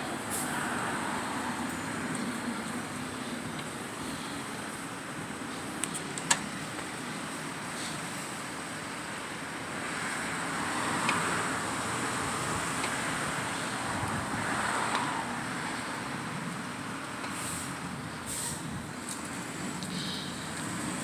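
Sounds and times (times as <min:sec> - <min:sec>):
strong wind rushing: 0:13.8 - 0:14.8.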